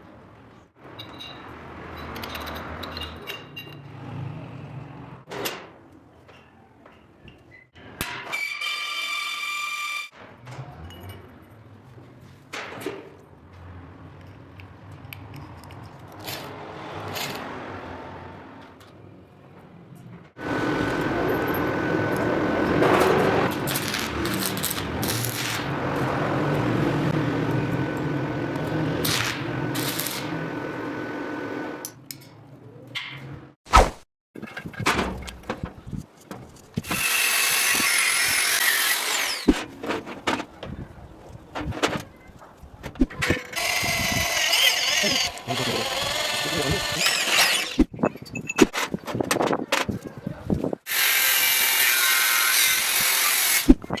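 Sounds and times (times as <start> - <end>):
handling and scraping sounds: 34.4 - 37.0, 39.3 - 45.8
sharp knocks and clatter: 34.4 - 37.0
power tool motor whine: 43.6 - 47.8.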